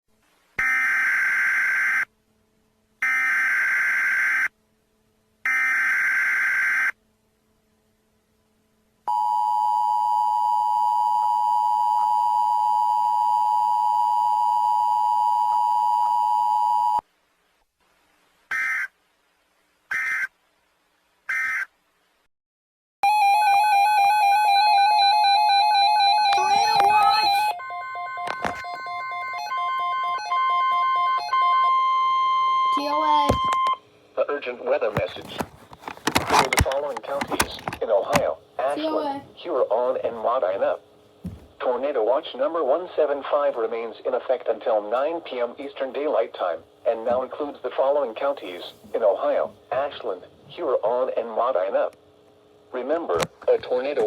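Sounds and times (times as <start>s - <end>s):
two-tone alert signal: 23.0s - 33.8s.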